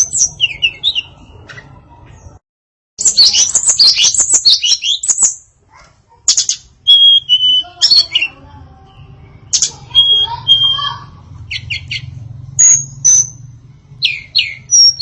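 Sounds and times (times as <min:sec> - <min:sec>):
songbird chirps and trills: 0:00.0 - 0:02.4, 0:03.0 - 0:15.0
bird whistles: 0:03.0 - 0:05.4, 0:06.3 - 0:08.3, 0:09.5 - 0:10.9, 0:14.0 - 0:15.0.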